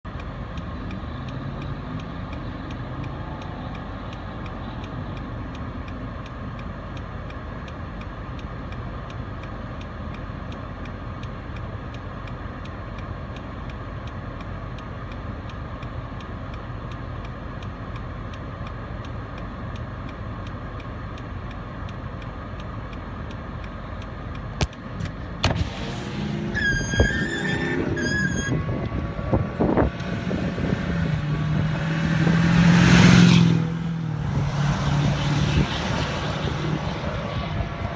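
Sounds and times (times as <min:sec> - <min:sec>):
car engine rumble inside cabin: 0:00.0 - 0:37.9
faint regular ticking: 0:00.1 - 0:34.2
wavering high tones: 0:26.0 - 0:29.8.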